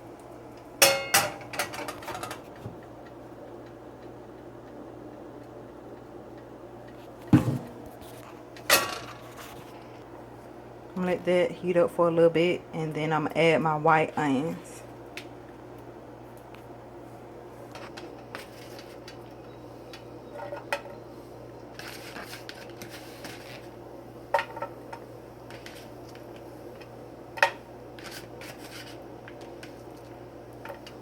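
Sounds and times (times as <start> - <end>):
steady low hum: 0.0 - 31.0
cookware and utensils clinking: 0.8 - 2.4.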